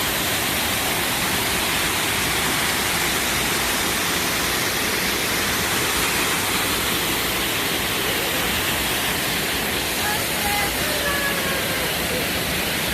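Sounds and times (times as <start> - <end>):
waterfall splashing: 0.0 - 12.9
faint voices: 7.9 - 12.9.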